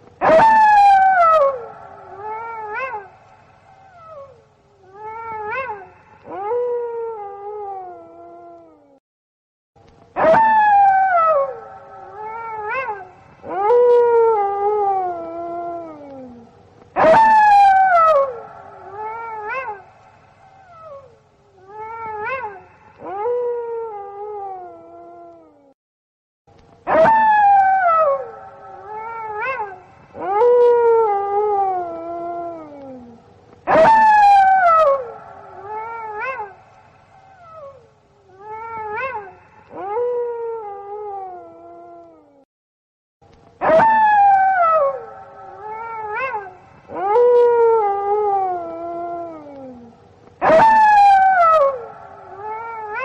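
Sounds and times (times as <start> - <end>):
wolves howling in chorus: 50.4 - 53.0.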